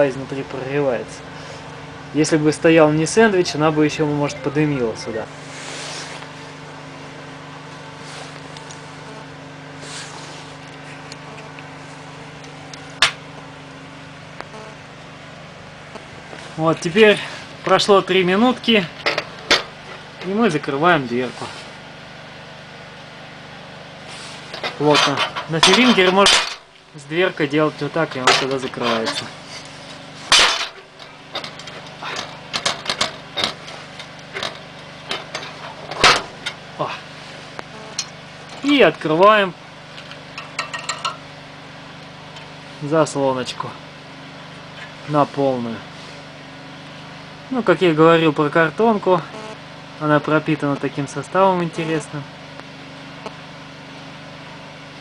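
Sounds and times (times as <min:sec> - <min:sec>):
faint fire crackles: 0:05.3 - 0:17.8
fire burning in a stove: 0:05.3 - 0:47.8, 0:50.6 - 0:55.0
fire crackling: 0:28.6 - 0:39.0.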